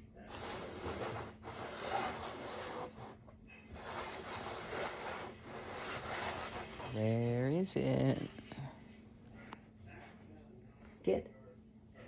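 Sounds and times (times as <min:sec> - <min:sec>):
rubbing and scraping: 0:00.2 - 0:07.3.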